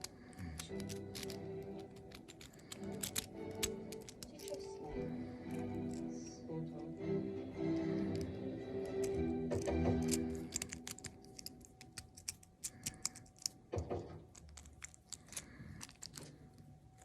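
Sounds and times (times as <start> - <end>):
background music: 0.0 - 11.7.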